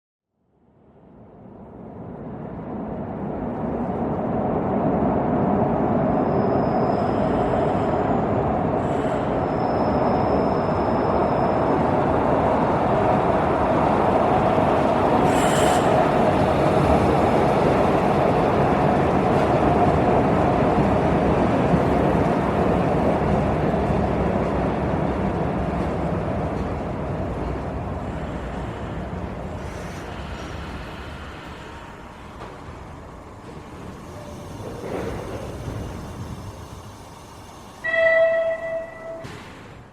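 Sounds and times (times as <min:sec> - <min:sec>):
train rumbling on rails: 0:00.7 - 0:39.9.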